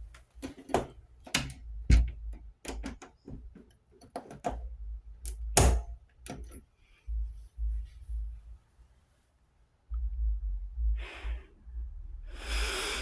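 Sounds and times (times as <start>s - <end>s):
clicks and knocks: 0.4s - 4.7s, 5.3s - 6.6s
low thumps: 7.1s - 8.5s, 9.9s - 12.4s.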